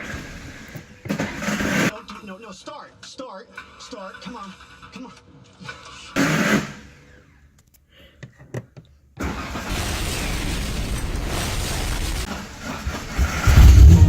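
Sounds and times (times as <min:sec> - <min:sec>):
diesel engine starting and running: 0:09.2 - 0:14.0
loud thud: 0:12.9 - 0:14.0.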